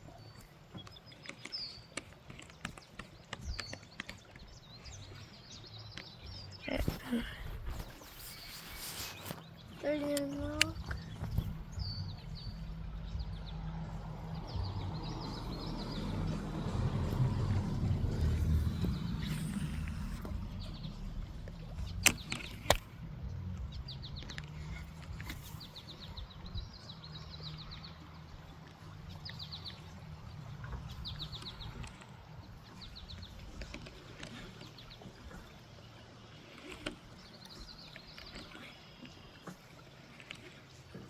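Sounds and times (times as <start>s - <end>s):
low steady rumble: 9.8s - 35.6s
sharp clicks: 18.2s - 23.0s.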